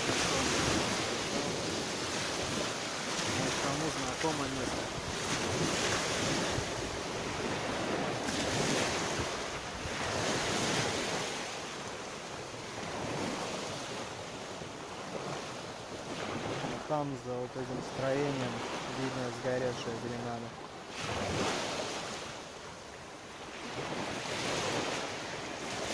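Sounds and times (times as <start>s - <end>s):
wind buffeting microphone: 0.0s - 11.8s
sea surf washing ashore: 0.0s - 25.9s.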